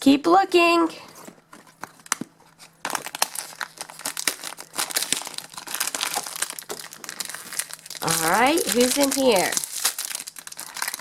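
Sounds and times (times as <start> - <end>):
plastic wrapper crinkling and tearing: 1.6 - 11.0.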